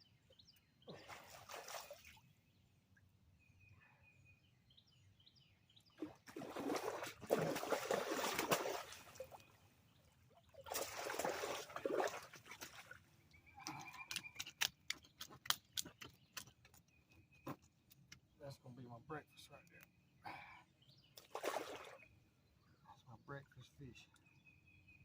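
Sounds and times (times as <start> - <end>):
faint bird chirps: 0.0 - 6.1, 13.2 - 15.2, 18.3 - 25.0
water splashing and trickling: 0.8 - 3.1, 5.9 - 16.8, 21.2 - 22.2.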